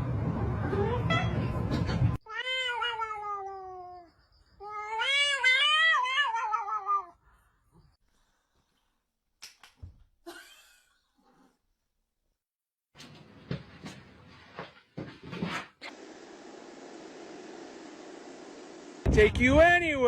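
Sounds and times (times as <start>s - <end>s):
cat yowling: 2.3s - 7.2s.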